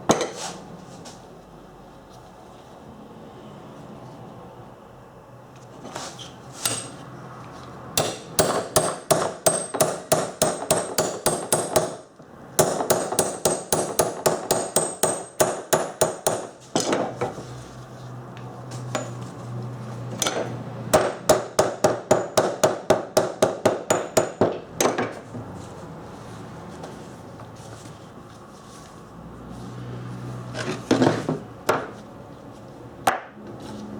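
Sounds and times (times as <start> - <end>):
small hammer tapping on metal: 8.0 - 12.0.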